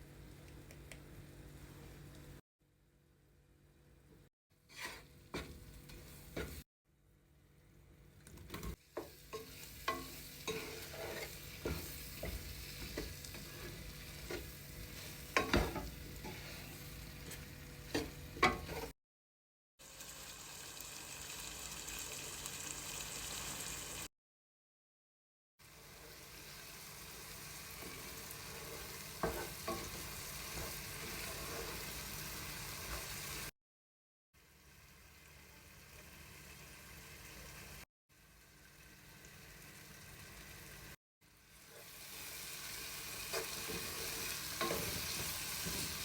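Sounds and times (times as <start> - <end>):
food sizzling in a pot: 4.6 - 6.7, 8.5 - 18.9, 19.8 - 24.1, 25.6 - 33.5, 34.4 - 46.0.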